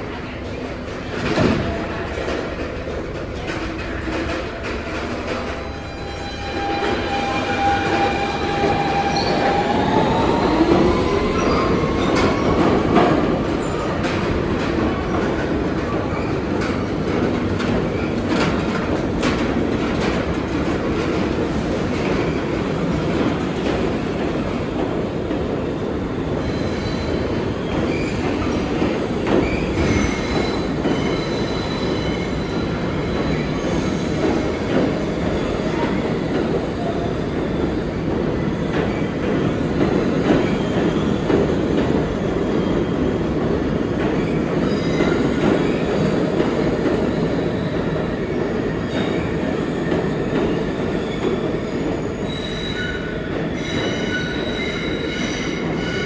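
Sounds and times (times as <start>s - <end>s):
steel wheels rumbling on rail: 0.0s - 56.0s
high-pitched wheel squeal: 5.7s - 12.6s.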